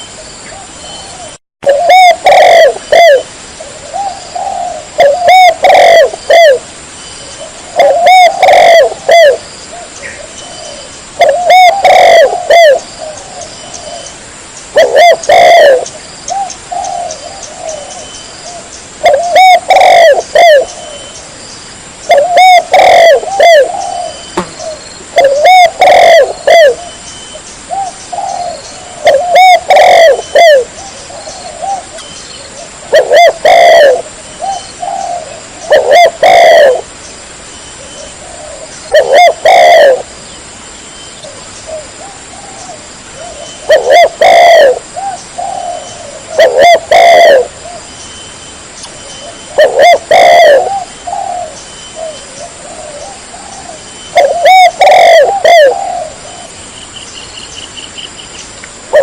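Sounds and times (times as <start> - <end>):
dove cooing: 0.5 - 6.7, 7.3 - 21.2, 22.1 - 27.0, 27.7 - 36.9, 37.8 - 40.2, 41.2 - 47.9, 49.2 - 56.6.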